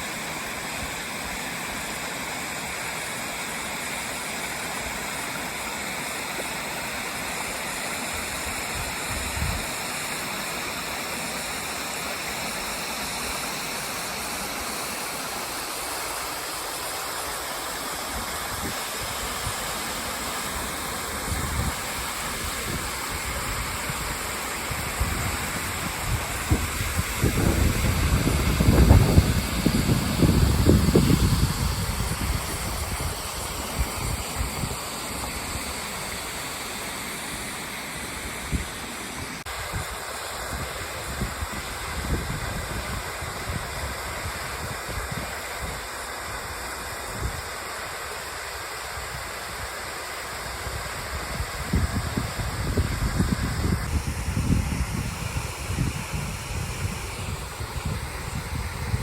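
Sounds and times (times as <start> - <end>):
waterfall rushing: 0.0 - 59.0
wind buffeting microphone: 21.2 - 34.8, 39.5 - 45.8, 50.6 - 59.0.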